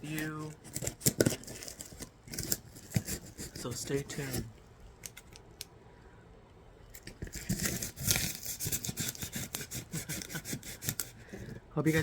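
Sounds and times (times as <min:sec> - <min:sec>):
blade cutting tape and cardboard: 0:07.3 - 0:11.2.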